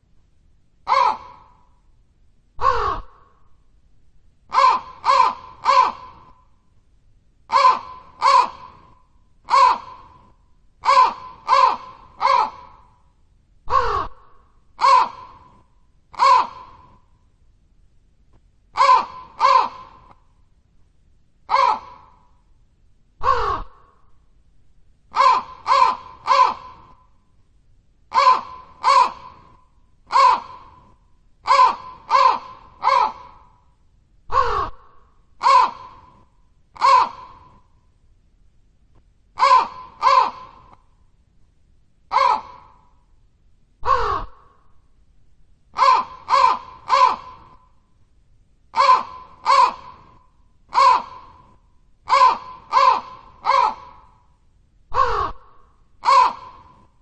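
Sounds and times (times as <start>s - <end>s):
crow cawing: 0.9s - 1.7s, 2.6s - 3.4s, 4.5s - 6.4s, 7.5s - 13.0s, 13.7s - 15.6s, 16.2s - 17.0s, 18.8s - 20.2s, 21.5s - 22.3s, 23.2s - 24.0s, 25.1s - 27.1s, 28.1s - 30.9s, 31.5s - 33.7s, 34.3s - 37.6s, 39.4s - 40.8s, 42.1s - 43.0s, 43.8s - 44.7s, 45.8s - 47.7s, 48.8s - 51.5s, 52.1s - 54.3s, 54.9s - 56.9s.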